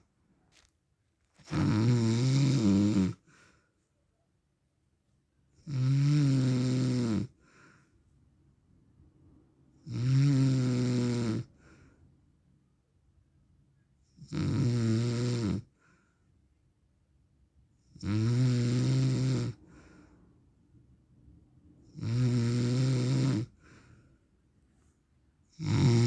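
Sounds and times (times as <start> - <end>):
man snoring: 1.4 - 3.2, 5.7 - 7.3, 9.9 - 11.5, 14.2 - 15.7, 18.0 - 19.6, 22.0 - 23.5, 25.5 - 26.0.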